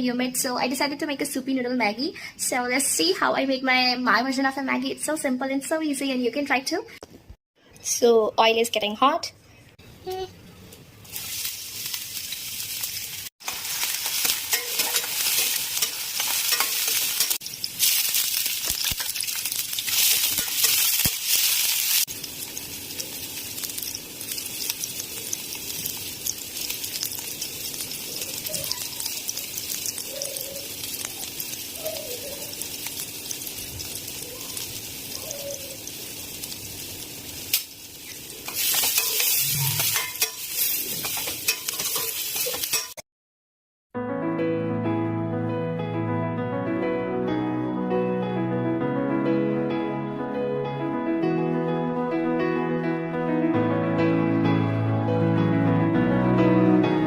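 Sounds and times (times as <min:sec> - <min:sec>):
oil sizzling in a pan: 0:11.0 - 0:43.0.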